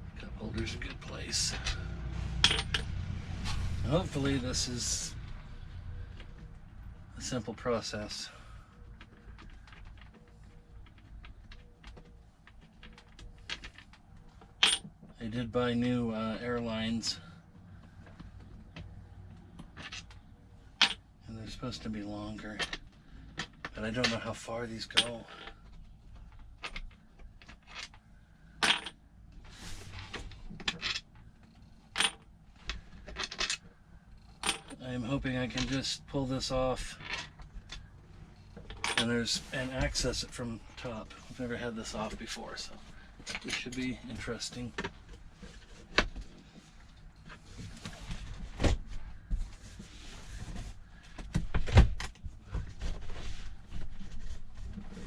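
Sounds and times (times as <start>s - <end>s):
metal parts and tools clinking: 2.4s - 2.9s, 14.5s - 15.0s, 28.6s - 29.0s, 38.6s - 39.3s.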